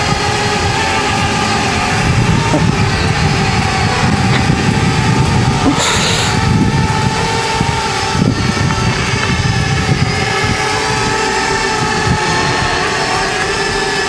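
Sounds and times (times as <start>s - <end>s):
drone propellers whining: 0.0s - 14.0s
wind rumble on microphone: 0.0s - 14.0s
short hiss: 5.7s - 6.4s.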